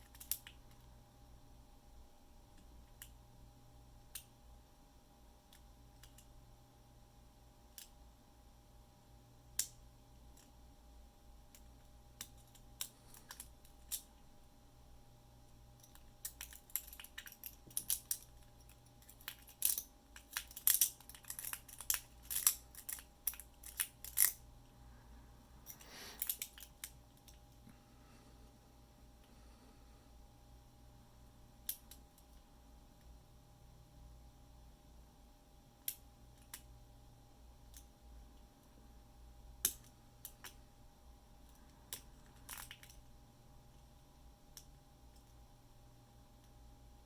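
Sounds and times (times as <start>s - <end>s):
faint steady hum: 0.0s - 47.0s
lock pick clicks and scrapes: 15.8s - 24.4s.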